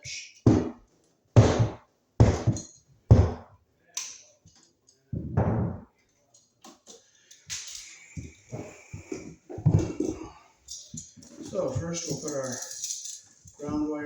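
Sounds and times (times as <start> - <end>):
dull thumps: 1.4 - 3.5, 5.2 - 6.0.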